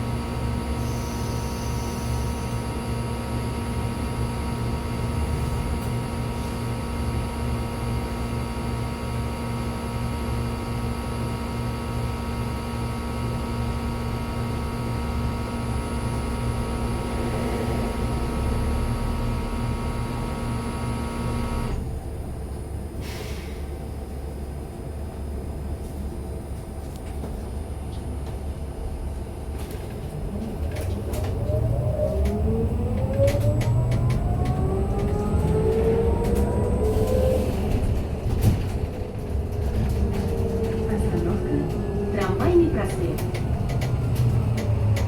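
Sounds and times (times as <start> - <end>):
electric drive whine rising: 14.0 - 21.8, 31.2 - 37.7
road rumble: 15.7 - 20.5, 29.3 - 45.0.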